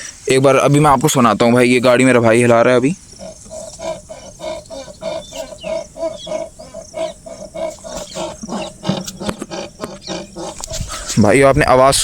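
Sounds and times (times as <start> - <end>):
car suspension rattling and creaking: 2.4 - 11.3.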